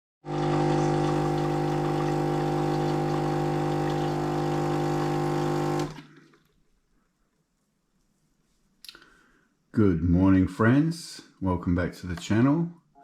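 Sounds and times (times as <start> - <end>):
coffee maker motor hum: 0.2 - 6.1.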